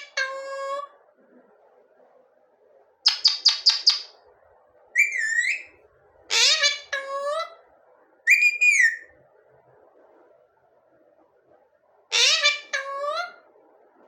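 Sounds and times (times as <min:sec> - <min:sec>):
parrot chirping and whistling: 0:03.1 - 0:04.1, 0:05.0 - 0:05.7, 0:06.3 - 0:07.0, 0:08.3 - 0:09.1, 0:12.2 - 0:13.2.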